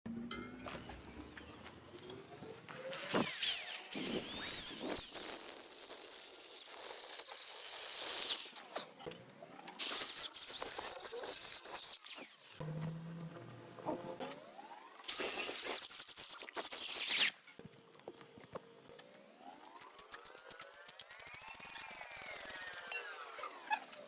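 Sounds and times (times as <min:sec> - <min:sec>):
power tool scraping metal: 0:02.8 - 0:17.6.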